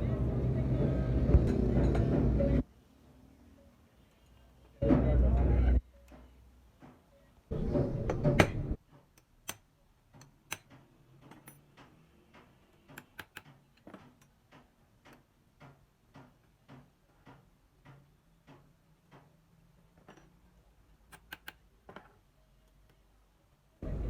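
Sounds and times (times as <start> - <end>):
light metal clicks and taps: 21.1 - 23.0.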